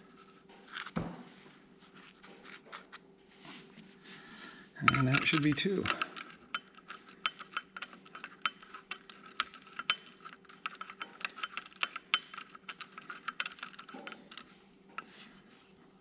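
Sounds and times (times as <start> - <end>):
ratchet wrench clicking: 4.8 - 14.4.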